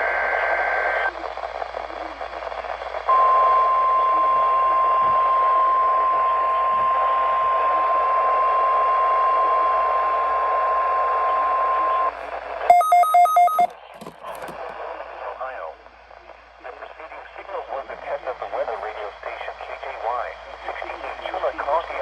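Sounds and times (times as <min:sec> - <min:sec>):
steady alarm tone: 0:12.7 - 0:13.7.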